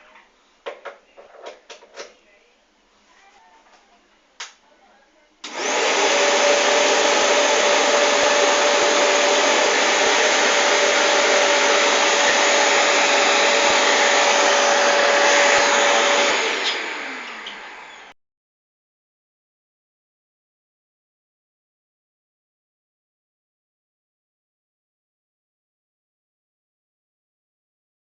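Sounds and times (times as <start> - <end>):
vacuum cleaner running: 5.4 - 18.2
vacuum motor winding down: 5.4 - 18.2.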